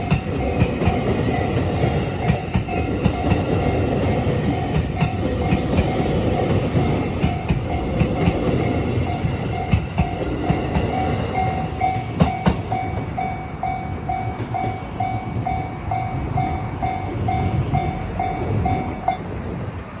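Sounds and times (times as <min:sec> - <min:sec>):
wheels clicking over rail joints: 0:00.0 - 0:13.3
level-crossing alarm ringing: 0:00.0 - 0:19.2
electric train passing: 0:00.0 - 0:20.0.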